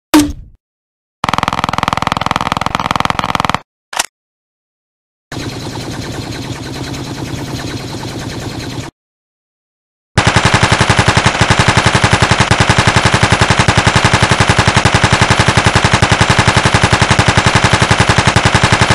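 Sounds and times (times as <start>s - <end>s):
rapid automatic gunfire: 1.2s - 3.6s, 5.3s - 8.9s, 10.2s - 18.9s.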